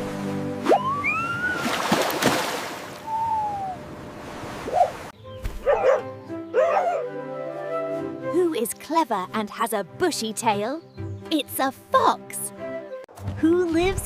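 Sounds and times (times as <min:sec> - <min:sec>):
light background music: 0:05.2 - 0:14.0.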